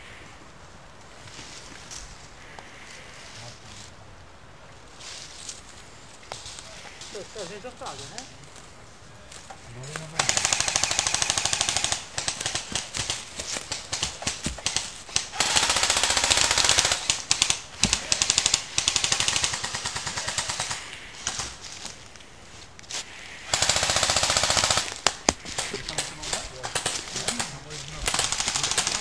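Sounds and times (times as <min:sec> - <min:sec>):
airsoft guns rapid-fire bursts: 0:10.2 - 0:21.5, 0:23.5 - 0:29.0.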